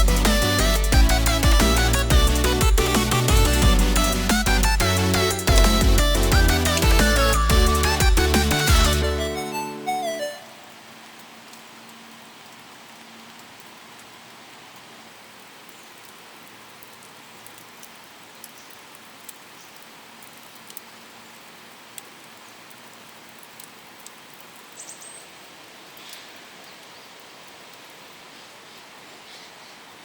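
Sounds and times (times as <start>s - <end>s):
outdoor background hiss: 0.0s - 30.0s
faint ticks: 16.8s - 20.9s.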